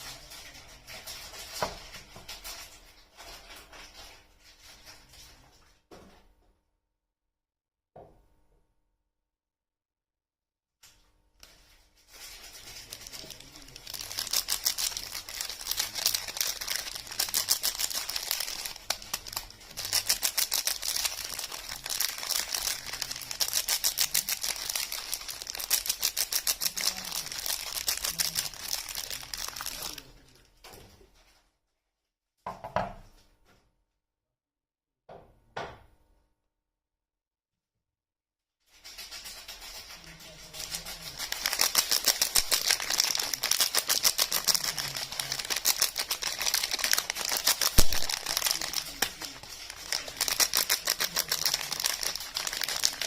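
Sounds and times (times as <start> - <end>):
packaging crinkling and tearing: 11.4 - 30.4, 38.9 - 53.0.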